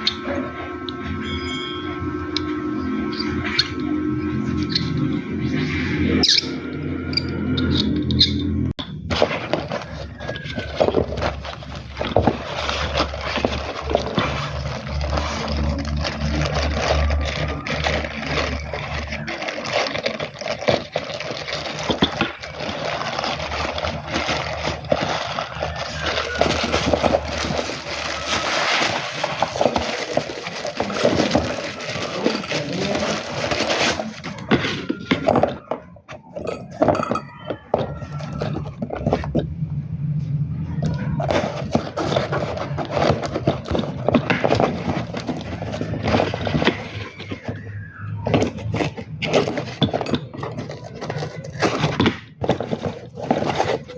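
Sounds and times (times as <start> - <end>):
hard objects clattering and scraping: 0.0 - 53.9.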